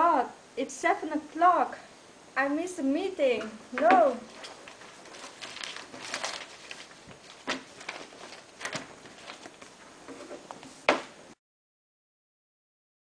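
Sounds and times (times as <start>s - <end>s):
rustling: 3.8s - 11.2s.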